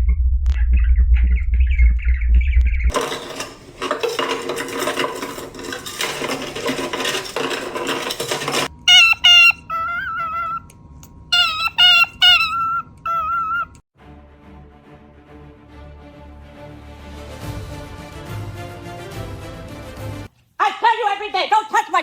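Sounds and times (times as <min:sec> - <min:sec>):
clattering noise: 0:02.9 - 0:09.3
parrot whistling: 0:08.9 - 0:10.7, 0:11.3 - 0:13.8
birds chirping: 0:11.4 - 0:13.8.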